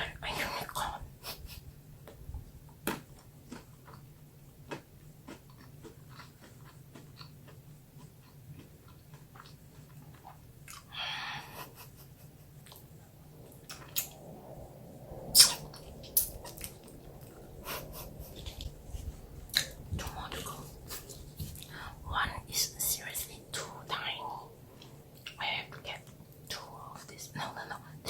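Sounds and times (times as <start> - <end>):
close wet chewing: 3.1 - 12.0, 12.6 - 14.3, 15.4 - 21.8
breathy hiss: 10.9 - 12.2.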